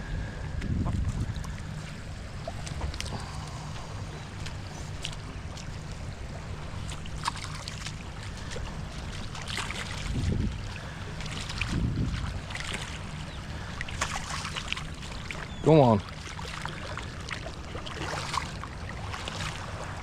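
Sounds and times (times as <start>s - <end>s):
wind rumble on microphone: 0.0s - 15.6s
water sloshing in shallows: 0.0s - 20.0s.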